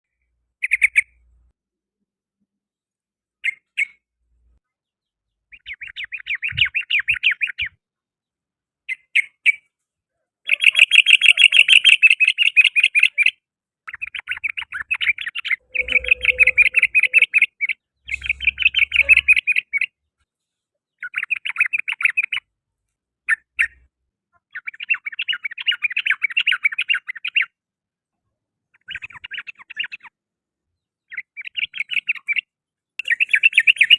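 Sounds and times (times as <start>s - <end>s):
bird chattering song: 0.6s - 1.2s, 5.4s - 7.8s, 10.5s - 20.0s, 20.9s - 22.5s, 23.3s - 27.6s, 28.7s - 30.1s, 31.0s - 33.9s.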